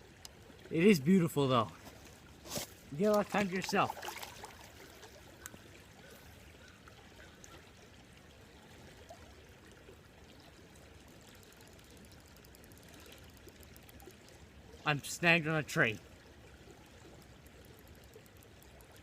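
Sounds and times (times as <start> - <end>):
creek water running: 0.0 - 19.0.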